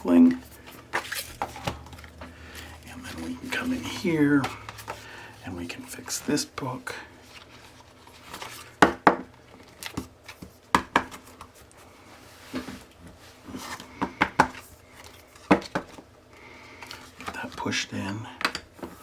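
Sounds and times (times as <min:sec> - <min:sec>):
paper rustling: 0:00.3 - 0:08.8.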